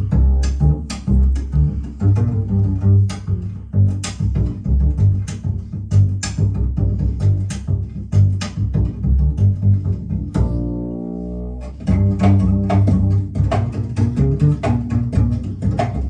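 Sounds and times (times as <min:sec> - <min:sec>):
sharp percussive clicks: 0:00.0 - 0:09.6
double-bass line: 0:00.0 - 0:16.0.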